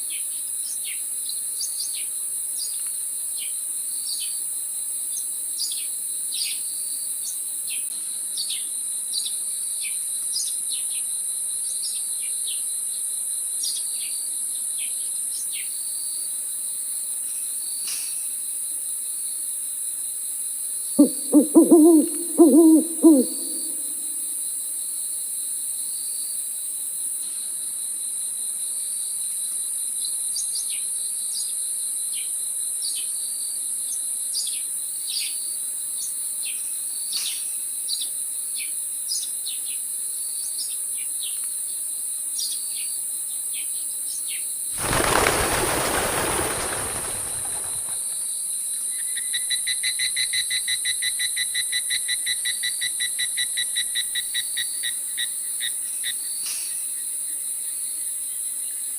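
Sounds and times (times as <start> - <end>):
bird chirps: 21.0 - 24.1.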